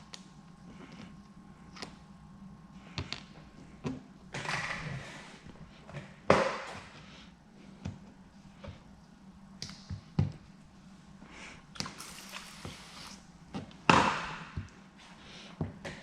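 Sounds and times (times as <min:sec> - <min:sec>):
spray bottle spritzes: 0:11.8 - 0:13.2.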